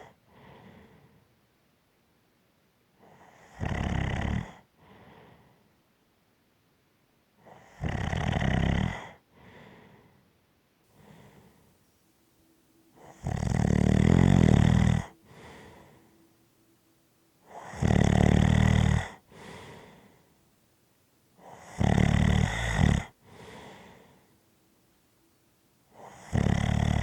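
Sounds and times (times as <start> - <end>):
soft breathing: 0.2 - 1.4, 4.7 - 5.8, 9.3 - 10.3, 10.9 - 27.0
loud snoring: 3.2 - 4.6, 7.5 - 9.2, 12.9 - 16.2, 17.4 - 20.1, 21.4 - 24.1, 25.9 - 27.0.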